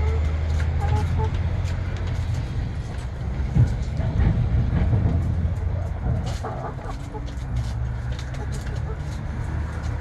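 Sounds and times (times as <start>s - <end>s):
wind buffeting microphone: 0.2s - 8.3s
hens pecking cabbage: 5.5s - 10.0s.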